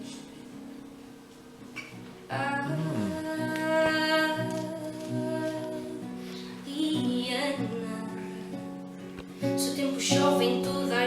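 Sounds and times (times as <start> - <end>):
acoustic guitar: 0.0 - 11.0
woman singing long note: 2.3 - 6.0.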